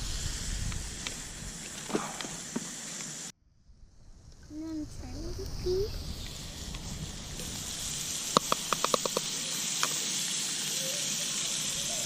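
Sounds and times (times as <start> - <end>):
campfire hissing: 0.0 - 12.0
sharp fire crackles: 0.0 - 12.0.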